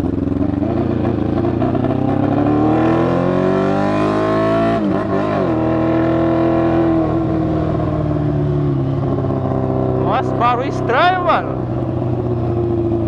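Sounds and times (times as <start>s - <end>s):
motorcycle engine revving: 0.0s - 13.0s
man speaking: 10.0s - 11.6s.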